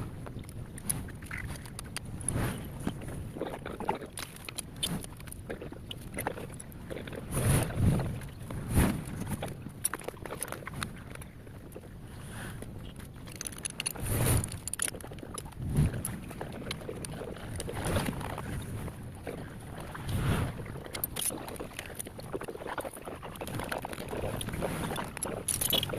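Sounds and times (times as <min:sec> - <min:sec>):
metallic clicks of hand tools: 0:25.5 - 0:25.9.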